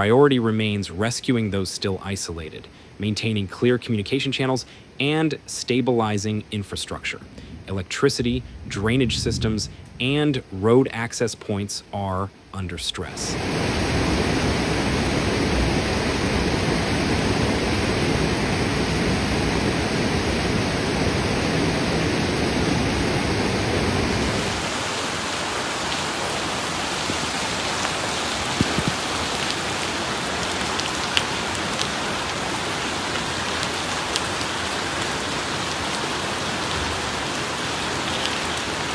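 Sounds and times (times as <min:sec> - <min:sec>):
heavy rain falling: 0:00.0 - 0:11.9, 0:12.6 - 0:38.9
deep rushing sound: 0:07.2 - 0:10.6.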